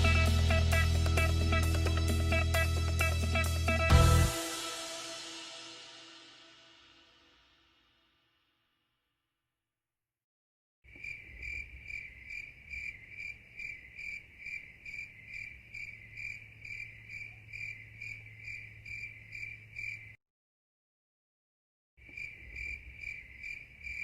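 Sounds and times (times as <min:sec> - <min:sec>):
cricket chirping: 0:10.9 - 0:20.2, 0:22.0 - 0:24.0.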